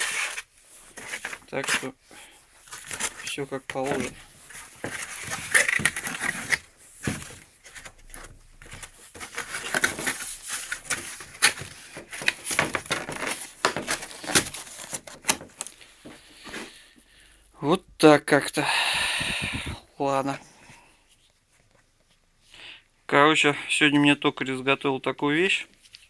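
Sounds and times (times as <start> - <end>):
rustling of handled objects: 0.0 - 17.6.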